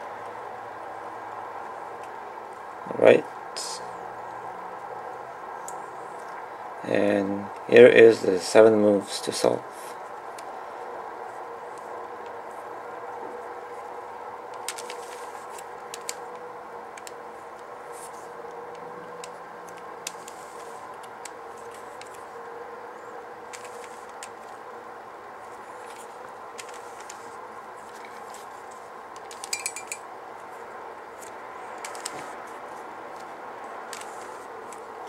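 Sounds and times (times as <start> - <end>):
steady background hum: 0.0 - 35.0
puzzle cube clicking: 14.5 - 16.4, 23.5 - 24.5, 26.6 - 27.3, 29.2 - 30.0, 31.8 - 32.2.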